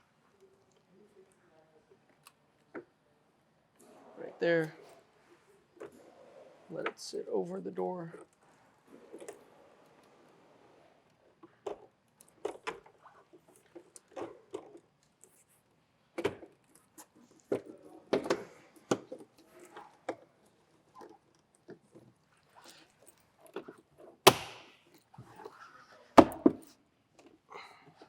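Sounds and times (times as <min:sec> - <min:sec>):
sharp knocks: 0:24.3 - 0:24.7.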